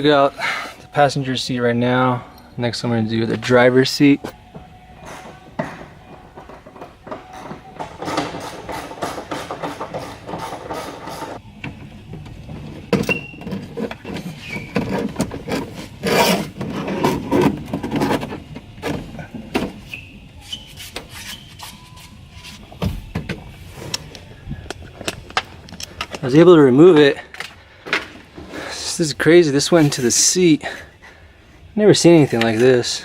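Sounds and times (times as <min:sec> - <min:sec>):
metal scraping and knocking: 0:04.2 - 0:20.0.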